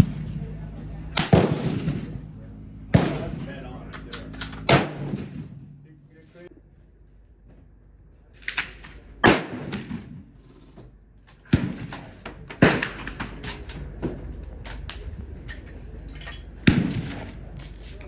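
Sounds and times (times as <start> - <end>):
loud gunshots with echo: 1.2 - 2.1, 2.9 - 3.4, 4.6 - 5.6, 9.2 - 10.1
faint gunshot cracks: 9.2 - 10.1.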